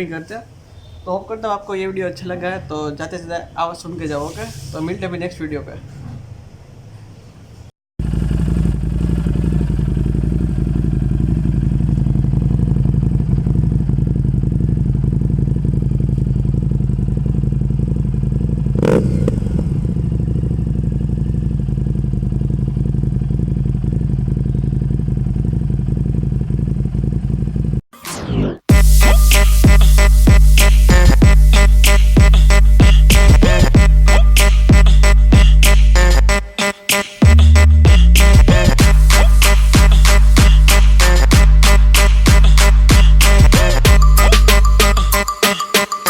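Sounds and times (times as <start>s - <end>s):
motorcycle engine running: 8.0s - 27.8s, 28.7s - 36.3s, 37.2s - 45.1s.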